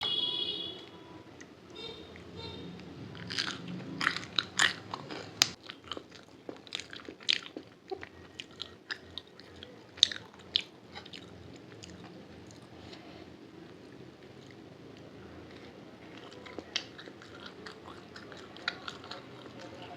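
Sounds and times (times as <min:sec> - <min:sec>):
crunchy chewing: 0:02.1 - 0:19.9.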